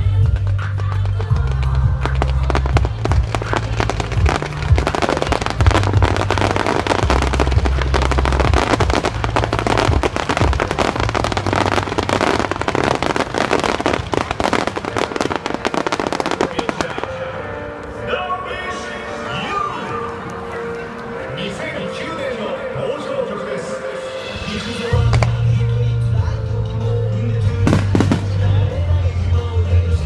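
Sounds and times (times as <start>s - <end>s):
deep low throb: 0.0s - 13.4s
fireworks crackling: 0.0s - 22.1s, 27.4s - 29.0s.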